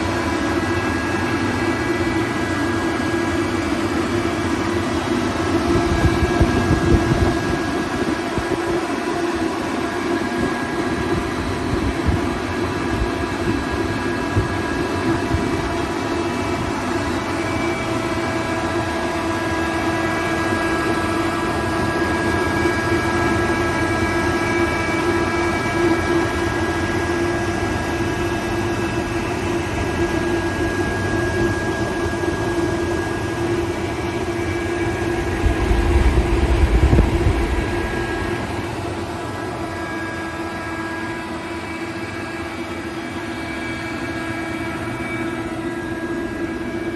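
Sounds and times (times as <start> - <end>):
air compressor running: 0.0 - 46.9
deep rumble: 34.7 - 39.0.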